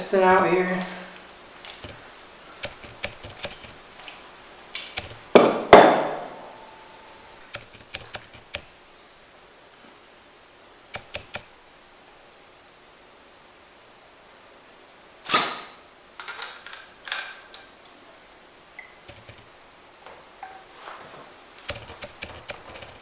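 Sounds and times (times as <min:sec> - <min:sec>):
loud metallic knocks: 0:05.4 - 0:06.6.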